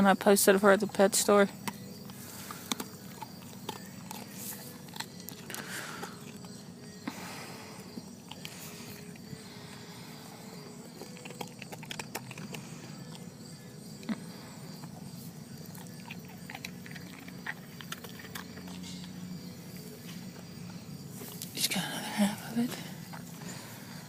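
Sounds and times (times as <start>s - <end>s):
low steady hum: 0.0s - 24.0s
dog chewing a hard treat: 1.5s - 7.3s, 7.9s - 20.4s.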